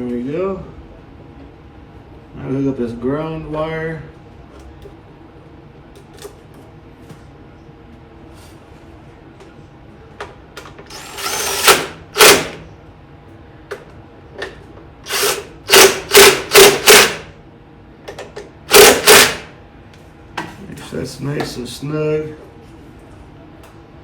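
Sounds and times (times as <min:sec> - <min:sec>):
power drill bursts: 0:10.9 - 0:12.6, 0:15.1 - 0:17.3, 0:18.7 - 0:19.5.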